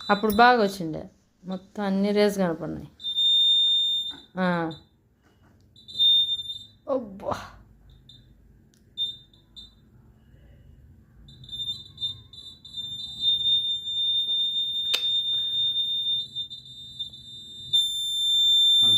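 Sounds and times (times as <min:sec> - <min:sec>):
alarm buzzer beeping: 0:00.0 - 0:00.8, 0:03.0 - 0:05.0, 0:05.8 - 0:06.8, 0:09.0 - 0:10.4, 0:11.3 - 0:18.9.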